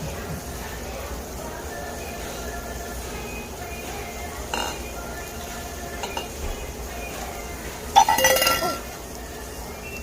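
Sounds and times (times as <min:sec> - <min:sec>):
tableware ringing clatter: 0:04.5 - 0:04.9, 0:06.0 - 0:06.4, 0:08.0 - 0:08.9.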